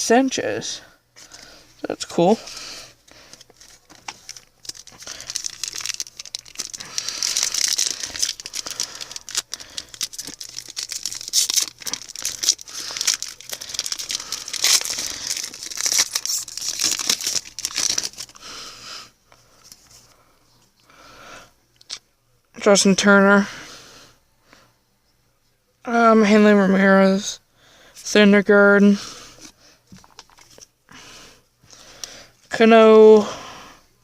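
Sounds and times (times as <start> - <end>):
plastic wrapper tearing and crinkling: 3.2 - 18.5.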